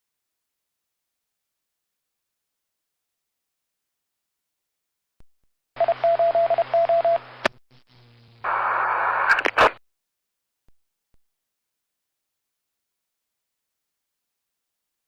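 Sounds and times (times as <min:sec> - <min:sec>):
short rapid beeps: 0:05.8 - 0:07.2
radio static bursts: 0:05.8 - 0:09.8
sharp clicks: 0:09.2 - 0:09.8.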